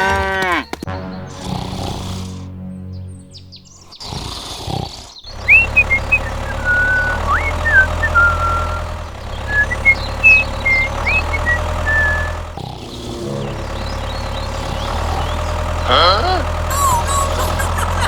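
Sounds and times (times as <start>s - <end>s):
motor humming: 5.3s - 18.0s
high whistling notes and slides: 5.4s - 14.9s.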